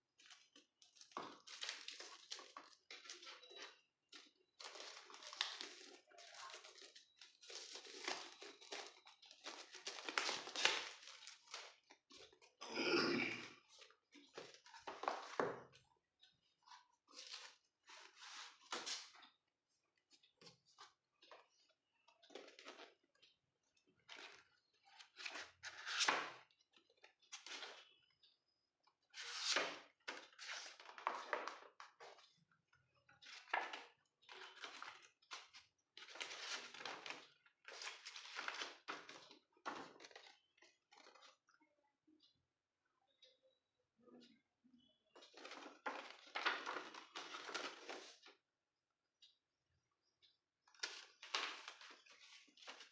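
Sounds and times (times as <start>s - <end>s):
packaging rustling and crinkling: 4.6s - 12.3s.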